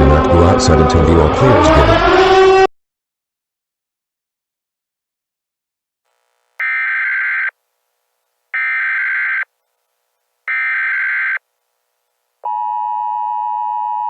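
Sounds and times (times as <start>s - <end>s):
buzzy digital data tones: 6.6s - 7.5s.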